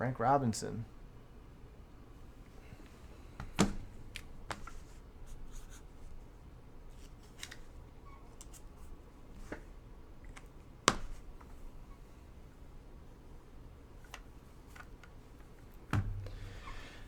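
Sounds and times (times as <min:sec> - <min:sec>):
cards rustling: 0:03.4 - 0:06.2, 0:06.9 - 0:11.6.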